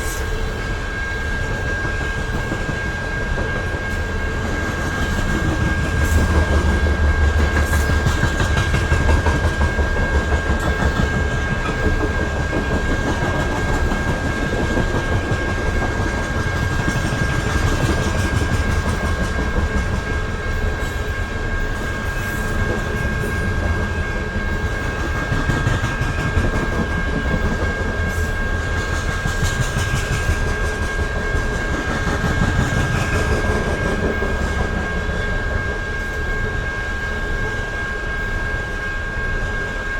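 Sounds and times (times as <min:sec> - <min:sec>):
train cars rumbling past: 0:00.0 - 0:38.4
wheels clacking over rail joints: 0:02.3 - 0:20.1.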